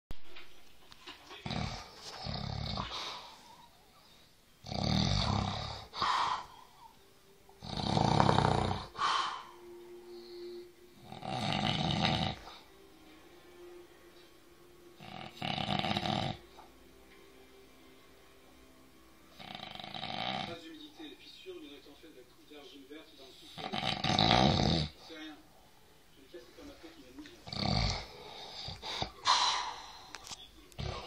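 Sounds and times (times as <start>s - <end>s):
person snoring: 1.4s - 3.7s, 4.6s - 6.7s, 7.6s - 12.7s, 15.0s - 16.7s, 19.3s - 20.6s, 23.4s - 25.0s, 27.4s - 31.0s
high-pitched snort: 4.6s - 6.6s, 7.6s - 9.6s, 11.0s - 12.6s, 15.0s - 16.4s, 23.4s - 25.0s, 27.5s - 29.9s.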